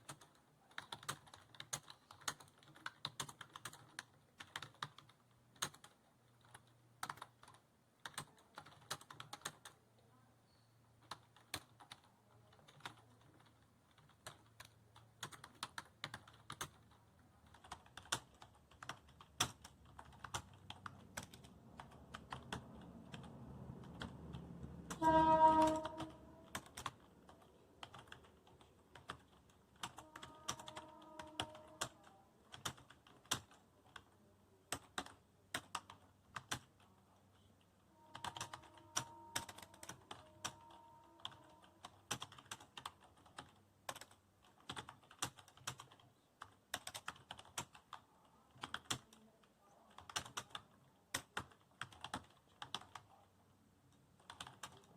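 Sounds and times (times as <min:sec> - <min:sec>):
fast typing on keyboard: 0:00.0 - 0:09.8, 0:11.0 - 0:36.9, 0:38.1 - 0:53.3, 0:54.2 - 0:54.9
short pitched tone: 0:25.0 - 0:26.4.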